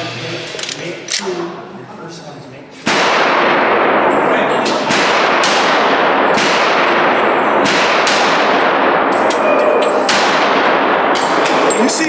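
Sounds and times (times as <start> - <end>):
steady loud noise: 0.0 - 2.1, 2.8 - 12.0
handgun shots: 4.7 - 11.6.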